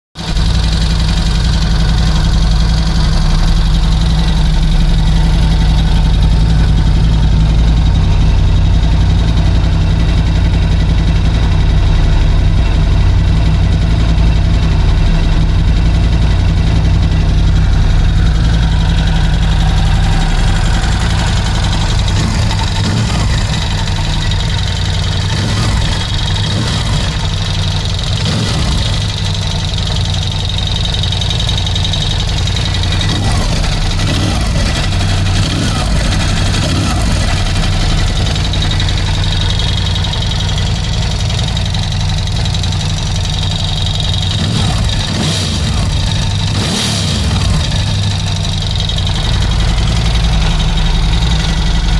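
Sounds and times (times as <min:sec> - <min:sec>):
motorcycle engine idling: 0:00.1 - 0:51.9.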